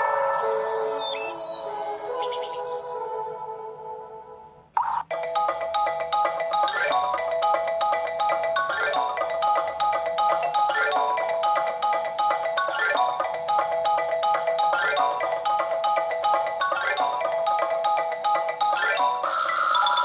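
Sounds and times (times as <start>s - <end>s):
marimba-like ringtone melody: 4.9s - 20.0s.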